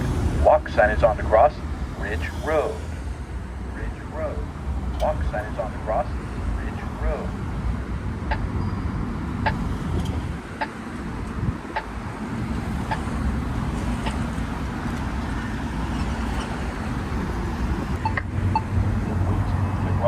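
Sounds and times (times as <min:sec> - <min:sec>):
road traffic rumble: 0:00.0 - 0:20.0
crosswalk button ticking: 0:03.7 - 0:08.6, 0:09.2 - 0:19.6.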